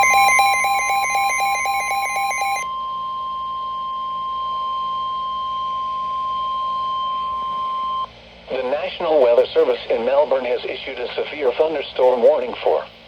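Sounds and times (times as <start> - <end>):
rapid repeating beeping: 0.0 - 2.6
piercing alarm tone: 0.0 - 8.1.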